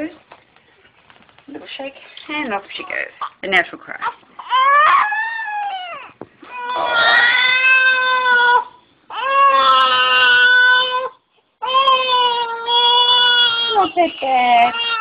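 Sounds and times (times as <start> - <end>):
newborn baby crying: 4.0 - 15.0.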